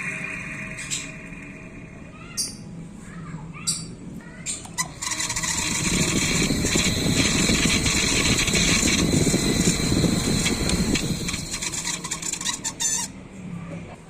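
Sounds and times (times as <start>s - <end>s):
high whine: 0.0s - 3.0s, 4.7s - 13.6s
fan with grinding rattle: 0.0s - 14.0s.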